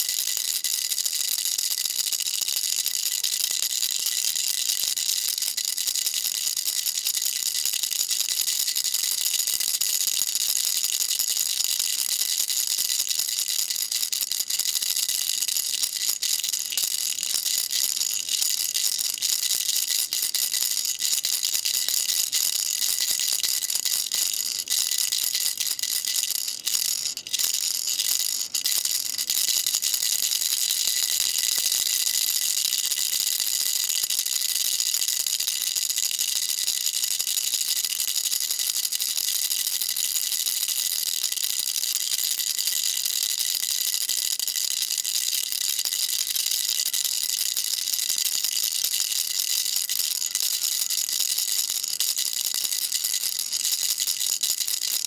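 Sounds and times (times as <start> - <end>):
baby rattle shaking: 11.5 - 34.4, 41.6 - 55.0.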